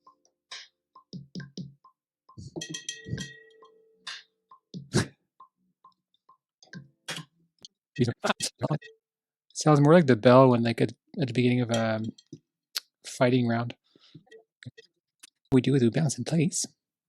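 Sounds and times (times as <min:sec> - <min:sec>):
bell hit ringing: 0:02.6 - 0:03.8.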